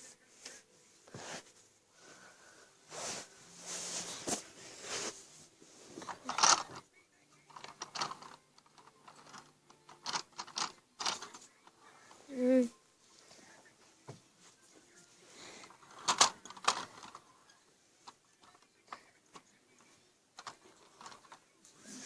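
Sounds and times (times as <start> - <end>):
small objects being handled: 2.9 - 6.8, 7.4 - 12.2, 14.6 - 22.0.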